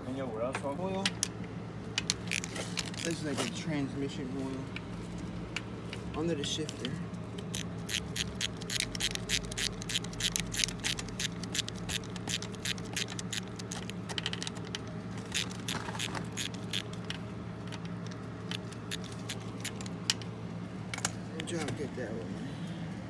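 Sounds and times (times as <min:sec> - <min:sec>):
steady low hum: 0:00.0 - 0:23.0
ratchet wrench clicking: 0:02.0 - 0:03.2, 0:07.4 - 0:20.3.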